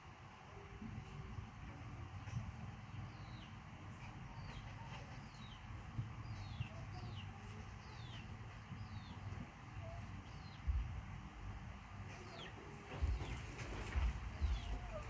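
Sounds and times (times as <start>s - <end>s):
low background rumble: 0.5s - 15.0s
bird chirping: 2.3s - 10.9s, 12.1s - 15.0s.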